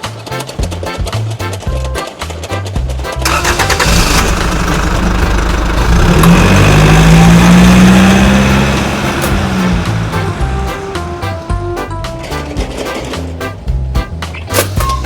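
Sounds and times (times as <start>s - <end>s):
engine running and revving: 3.2s - 11.8s.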